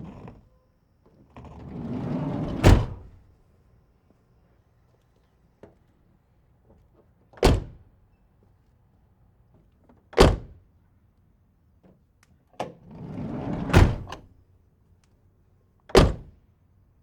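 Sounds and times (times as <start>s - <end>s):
sliding door rolling and scraping: 1.4s - 3.2s, 12.8s - 14.2s
van doors slamming: 2.4s - 3.2s, 13.4s - 14.2s.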